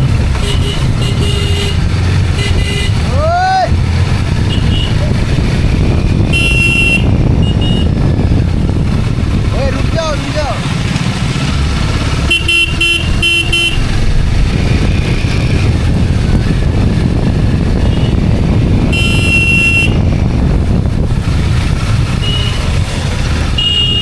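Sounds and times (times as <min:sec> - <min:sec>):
engine and road rumble: 0:00.0 - 0:24.0
long horn honk: 0:00.3 - 0:03.1, 0:04.4 - 0:05.0, 0:06.2 - 0:08.0, 0:12.2 - 0:14.0, 0:17.8 - 0:18.3, 0:18.9 - 0:20.1, 0:22.1 - 0:22.8, 0:23.5 - 0:24.0
short horn beeps: 0:06.3 - 0:07.9, 0:18.9 - 0:20.0, 0:23.6 - 0:24.0.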